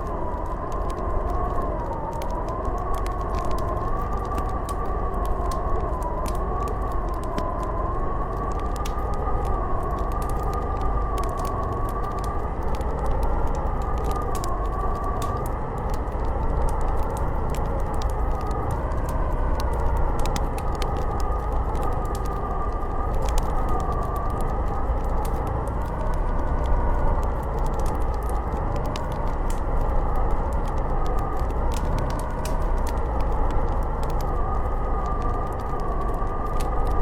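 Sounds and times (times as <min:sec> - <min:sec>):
blizzard wind howling: 0:00.0 - 0:37.0
low rumble: 0:00.0 - 0:37.0
wood fire crackling: 0:00.0 - 0:37.0.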